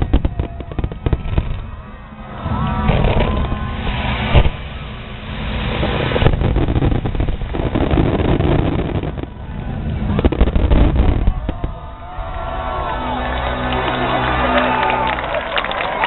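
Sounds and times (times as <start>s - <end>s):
fireworks booming: 0.0s - 12.5s
fireworks crackling: 0.0s - 16.0s.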